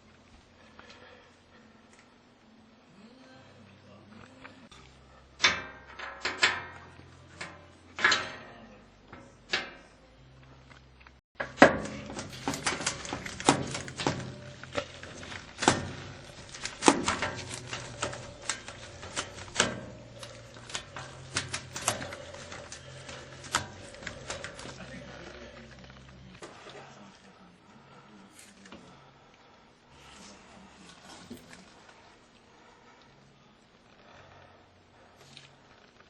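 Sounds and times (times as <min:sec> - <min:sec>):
clicks and scrapes: 0:10.7 - 0:26.8
knocks and clatters on metal: 0:11.4 - 0:24.8.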